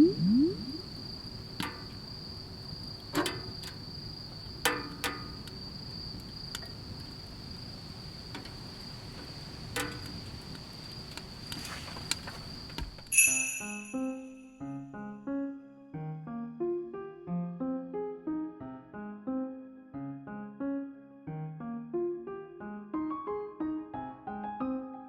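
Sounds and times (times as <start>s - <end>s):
crickets trilling: 0.0s - 13.0s.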